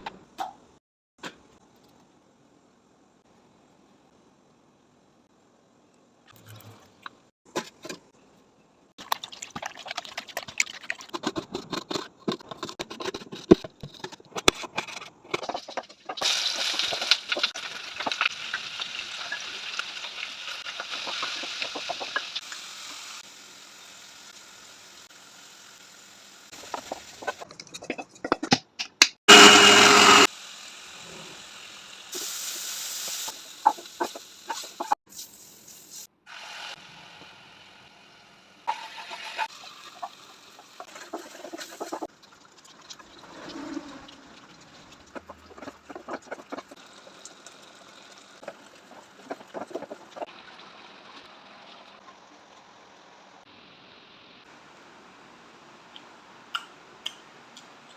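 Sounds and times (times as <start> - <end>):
loud noise: 29.3 - 30.3.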